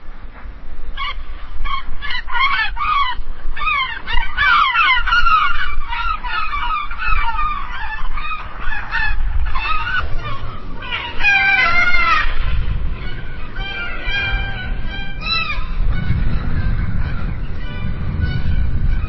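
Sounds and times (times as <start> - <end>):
gulls calling: 0.0 - 19.0
faint low rumble: 6.5 - 19.0.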